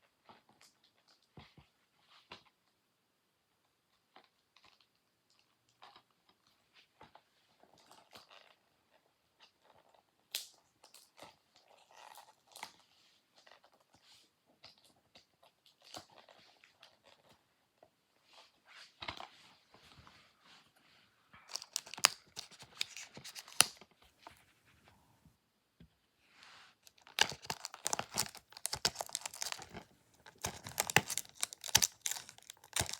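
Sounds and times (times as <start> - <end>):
plastic wrap crinkling and tearing: 21.5 - 23.8, 26.8 - 32.9.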